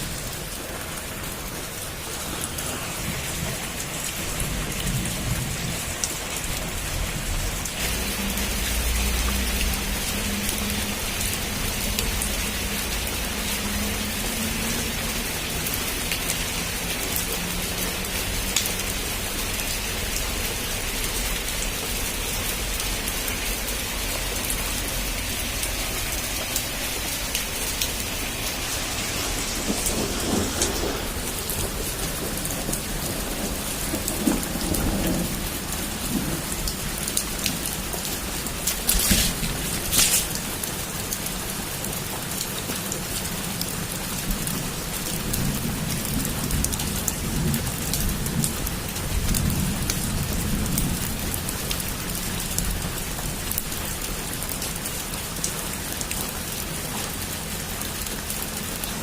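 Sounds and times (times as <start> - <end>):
heavy rain on a roof: 0.0 - 59.0
thunder rumbling: 24.4 - 40.8.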